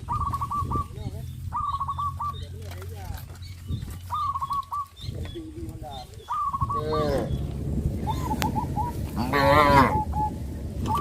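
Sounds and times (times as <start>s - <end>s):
cows mooing: 6.4s - 11.0s.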